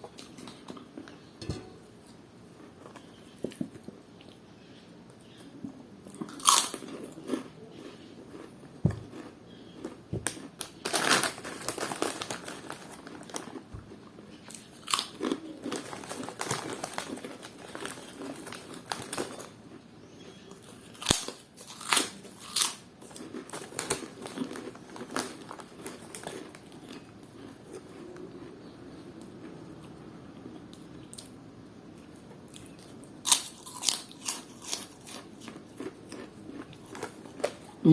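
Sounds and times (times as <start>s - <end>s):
chewing crunchy snacks: 5.2s - 31.4s, 32.0s - 37.8s
snack packet crinkling: 9.1s - 13.7s, 14.6s - 19.6s, 20.9s - 28.0s.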